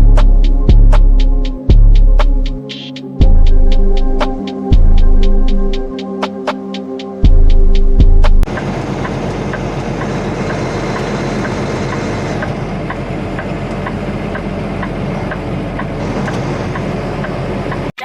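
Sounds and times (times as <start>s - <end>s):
truck engine and road noise: 7.3s - 18.0s.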